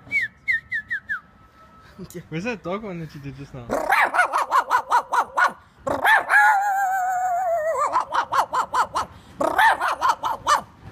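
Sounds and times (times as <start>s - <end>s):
man imitating dog howl: 3.7s - 10.4s
man imitating dog barks: 3.7s - 10.6s.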